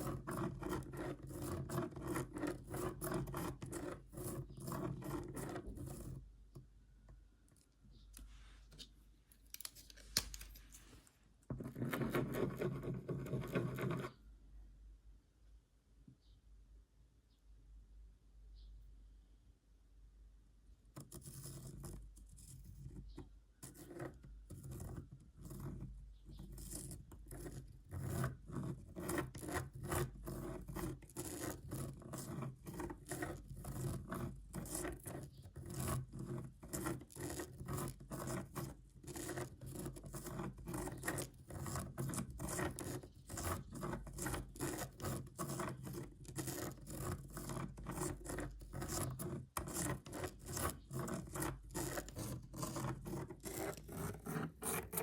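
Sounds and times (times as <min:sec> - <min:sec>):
pen scratching on paper: 0:00.0 - 0:06.2, 0:11.5 - 0:14.2, 0:21.0 - 0:55.0.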